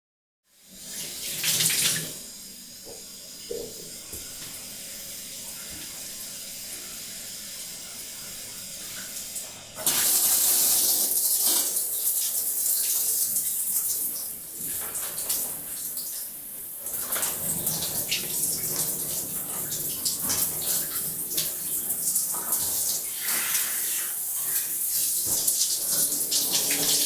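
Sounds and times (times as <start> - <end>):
tap running into bathtub: 2.8 - 4.6.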